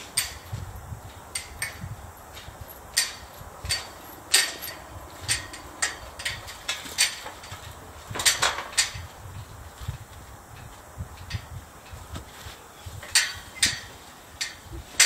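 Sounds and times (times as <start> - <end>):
hammering on metal gate hardware: 0.0 - 0.6, 1.2 - 9.2, 13.0 - 15.0.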